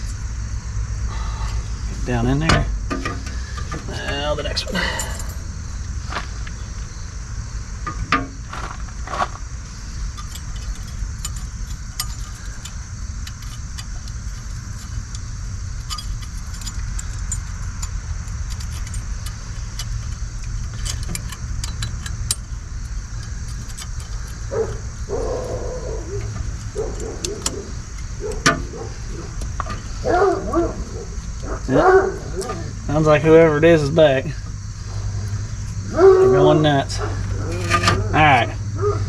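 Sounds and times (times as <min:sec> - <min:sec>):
steady low rumble: 0:00.0 - 0:39.0
metal brake clips clicking: 0:10.2 - 0:30.4.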